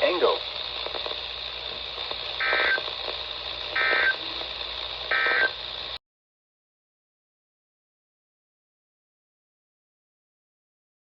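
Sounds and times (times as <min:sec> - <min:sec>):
radio hiss: 0:00.0 - 0:06.0
warbling data tones: 0:02.2 - 0:05.7.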